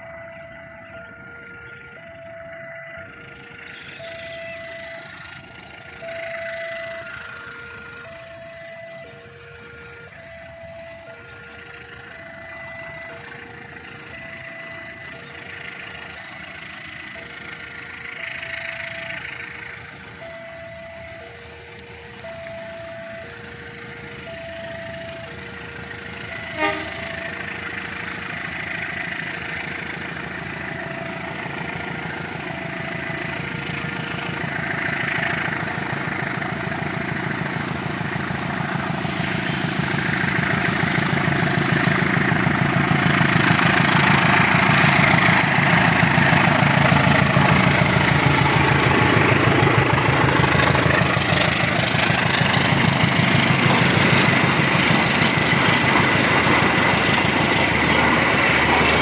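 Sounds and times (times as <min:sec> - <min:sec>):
diesel locomotive engine: 0:00.0 - 0:59.0
level-crossing alarm two tones: 0:38.8 - 0:59.0.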